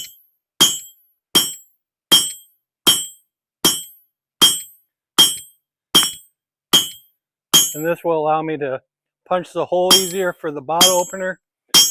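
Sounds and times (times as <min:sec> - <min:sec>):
hammer striking hot steel on anvil: 0:00.0 - 0:06.2, 0:06.8 - 0:07.0, 0:07.6 - 0:07.9, 0:09.9 - 0:11.9.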